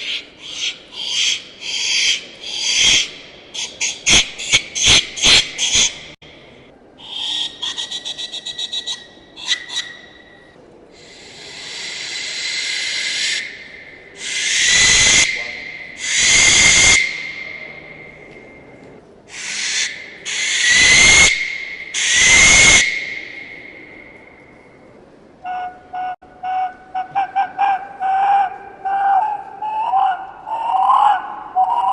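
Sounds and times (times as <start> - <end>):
resonator whistle hissing blasts: 10.0 - 24.8.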